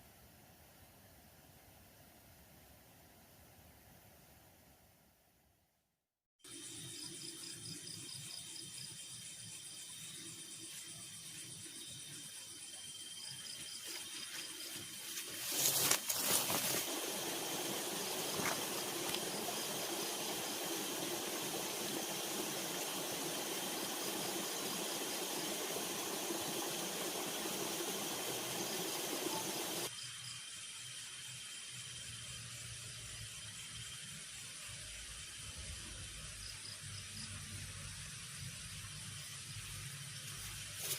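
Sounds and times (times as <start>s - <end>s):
high-pitched insect tones: 6.4s - 40.9s
waterfall rushing: 17.1s - 29.9s.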